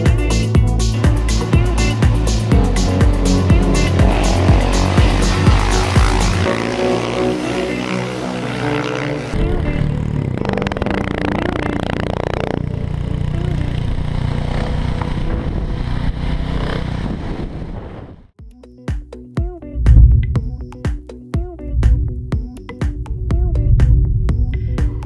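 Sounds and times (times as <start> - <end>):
vehicle engine running: 0.0 - 17.4.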